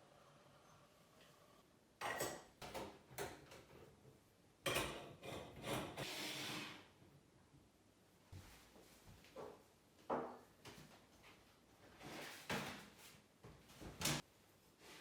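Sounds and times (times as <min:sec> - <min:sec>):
objects knocking and clattering: 0:04.6 - 0:06.0.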